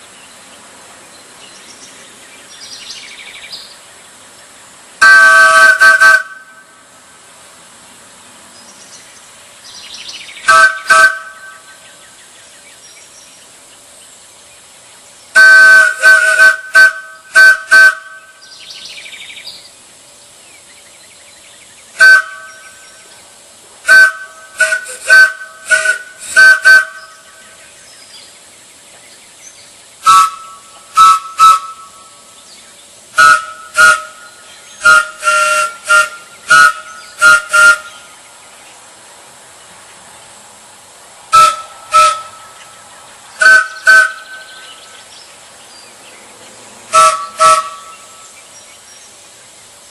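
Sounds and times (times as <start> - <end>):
wooden train whistle toots: 5.0 - 6.8, 10.4 - 11.8, 15.4 - 18.5, 22.0 - 22.9, 23.8 - 27.5, 30.0 - 32.2, 33.1 - 38.2, 41.3 - 42.8, 43.4 - 44.7, 46.9 - 48.3.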